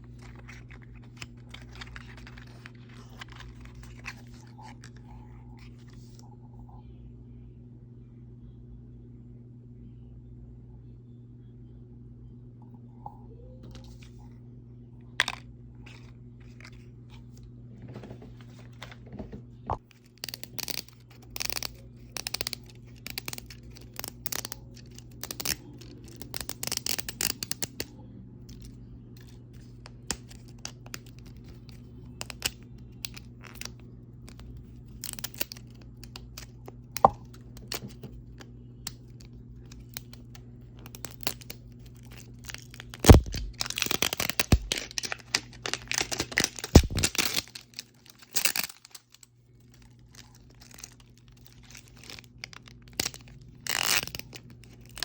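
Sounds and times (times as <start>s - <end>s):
plastic wrapping tearing: 0.0s - 4.5s, 19.9s - 27.8s, 38.9s - 55.0s
plastic crinkles and clicks: 0.0s - 5.0s, 19.8s - 27.9s, 28.5s - 55.0s
steady low hum: 0.0s - 55.0s.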